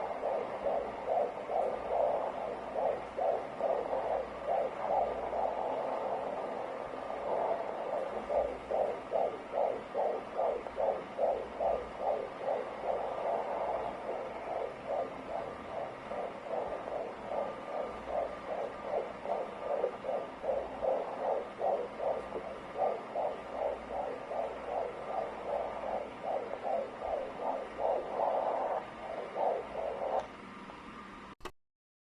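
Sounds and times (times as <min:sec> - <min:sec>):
fetal heartbeat pulsing swish: 0:00.0 - 0:30.3.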